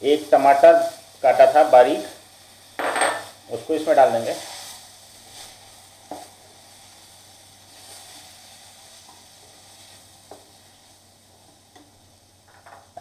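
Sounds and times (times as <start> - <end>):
tomato sizzling in hot oil: 0.0 - 13.0.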